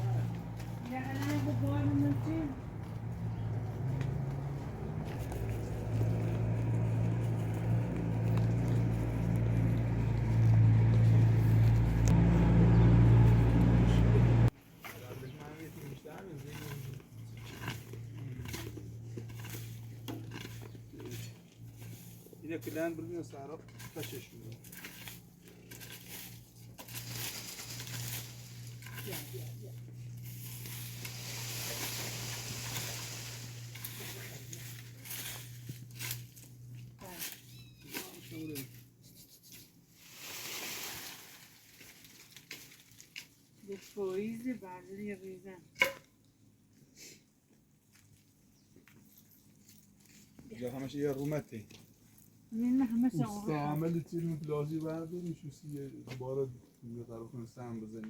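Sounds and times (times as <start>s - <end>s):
engine humming steadily: 0.0s - 40.4s
hiss with light crackles: 30.6s - 34.1s, 39.5s - 42.2s.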